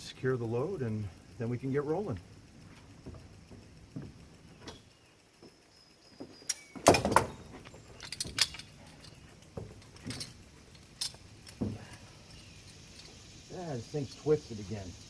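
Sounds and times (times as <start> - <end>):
tie-down strap hardware clanking: 6.4 - 13.2.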